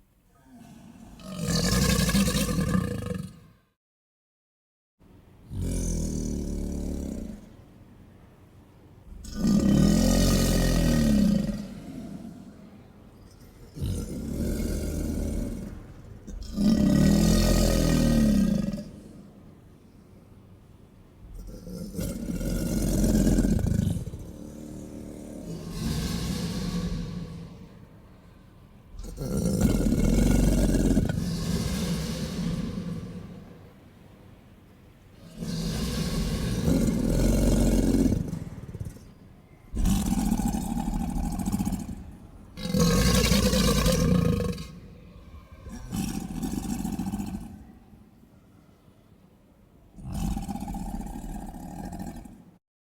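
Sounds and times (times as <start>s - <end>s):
alligator bellowing: 0.6s - 3.5s, 9.1s - 19.4s, 21.3s - 28.1s, 28.9s - 33.8s, 35.2s - 47.9s, 50.0s - 52.6s.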